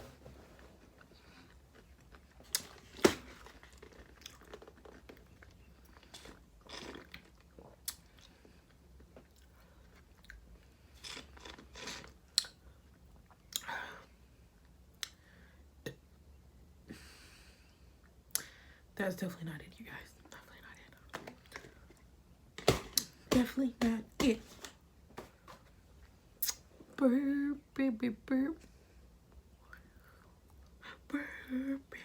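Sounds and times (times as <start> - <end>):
chewing with wet clicks and smacks: 3.6 - 11.6, 12.3 - 13.7.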